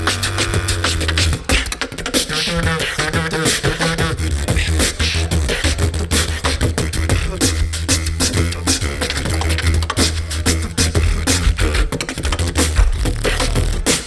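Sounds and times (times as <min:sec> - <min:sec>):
beatboxed kick and snare clicks: 0:00.0 - 0:14.0
deep vocal bass line: 0:00.0 - 0:14.0
warbling pitched vocal effect: 0:02.4 - 0:14.0.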